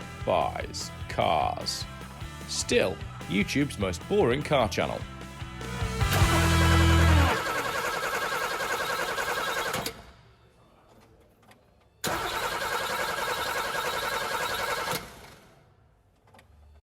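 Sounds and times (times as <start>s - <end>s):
car engine cranking: 6.0s - 10.0s, 12.0s - 15.4s.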